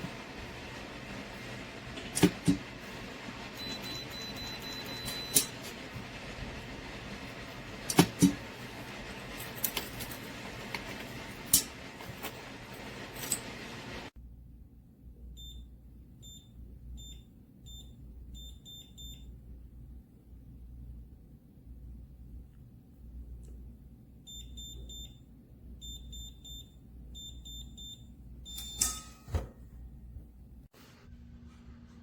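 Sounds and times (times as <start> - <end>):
keypad electronic beeps: 3.6 - 5.6.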